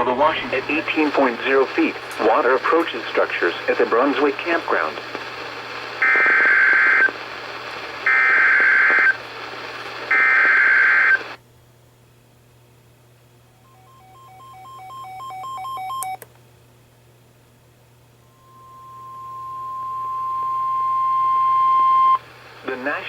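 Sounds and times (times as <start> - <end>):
radio static: 0.0 - 11.4, 18.3 - 23.0
buzzy digital data tones: 8.0 - 9.2, 18.3 - 22.2.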